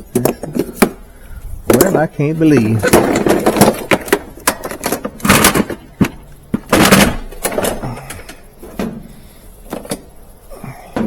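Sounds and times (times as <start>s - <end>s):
loose parts clattering in a box: 2.6s - 8.4s.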